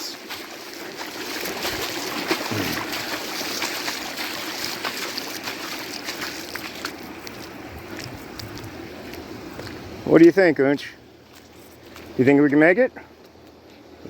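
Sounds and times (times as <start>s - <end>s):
small water splashes: 0.0s - 9.8s
floodwater rushing: 0.0s - 10.3s.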